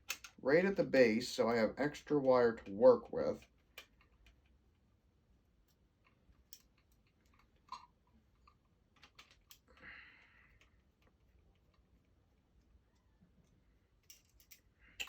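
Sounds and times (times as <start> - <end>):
clicks of small plastic parts: 0.0 - 0.4, 6.0 - 9.9, 14.0 - 15.0.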